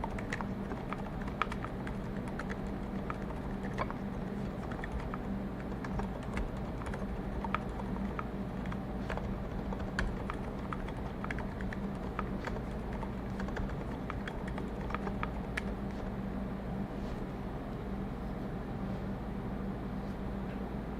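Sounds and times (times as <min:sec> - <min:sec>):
muted keyboard key presses: 0:00.0 - 0:15.8
low room hum: 0:00.0 - 0:20.9.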